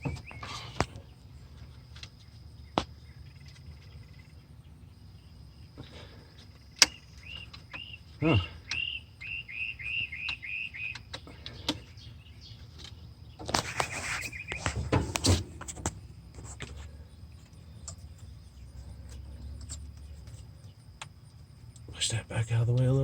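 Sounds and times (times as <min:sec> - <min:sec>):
bird chirping: 0:00.0 - 0:23.0
metal and plastic parts rattling: 0:12.8 - 0:16.9.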